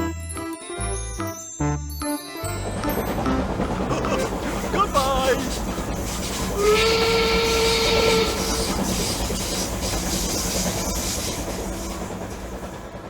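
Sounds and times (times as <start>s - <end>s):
train running noise: 2.4s - 13.0s
train whistle with hiss: 4.9s - 11.3s.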